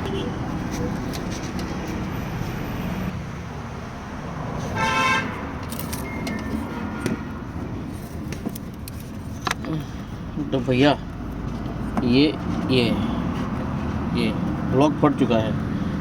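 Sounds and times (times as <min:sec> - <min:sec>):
vehicle horn honking: 0:00.0 - 0:01.0, 0:04.7 - 0:05.5
traffic rumble: 0:00.0 - 0:16.0.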